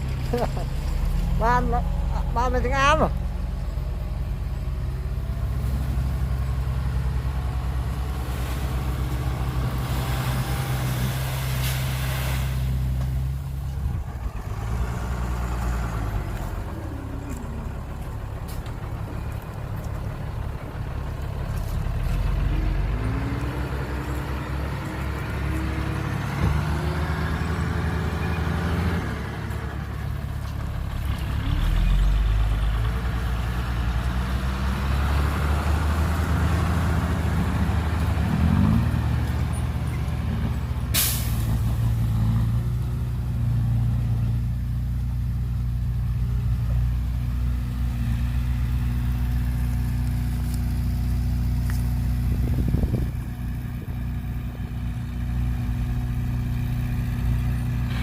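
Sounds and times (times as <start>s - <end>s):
truck diesel engine revving: 0.0s - 58.0s
air hiss: 41.0s - 41.6s.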